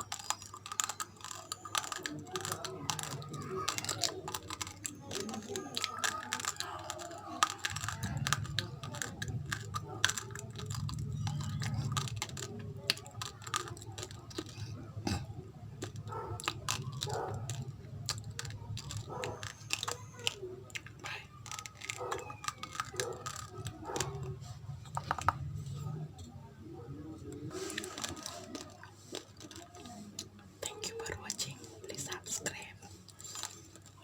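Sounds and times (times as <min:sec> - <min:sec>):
wet mouth sounds: 0:00.0 - 0:24.2
crunching chewing of rice: 0:00.0 - 0:26.0, 0:27.0 - 0:32.2, 0:32.8 - 0:34.0.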